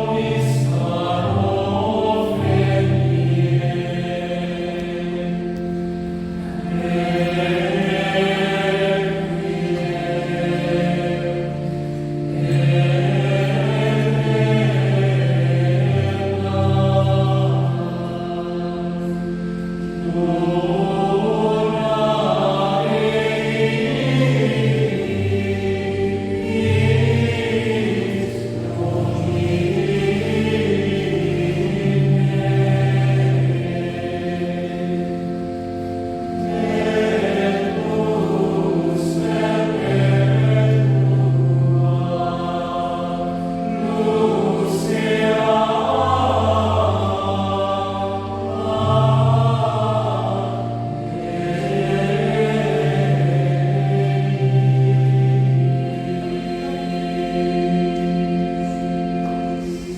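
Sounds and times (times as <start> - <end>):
choir singing slow chords: 0.0 - 59.9.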